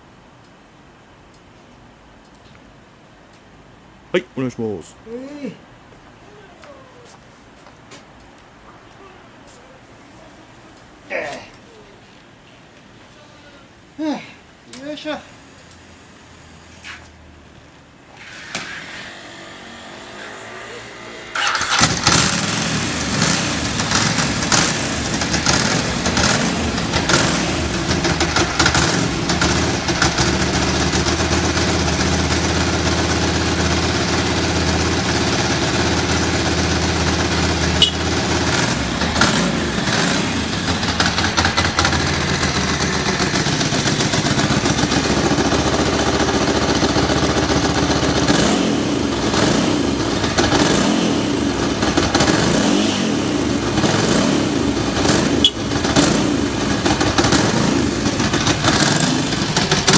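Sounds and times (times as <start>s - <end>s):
motorcycle engine starting and idling: 18.1s - 59.9s.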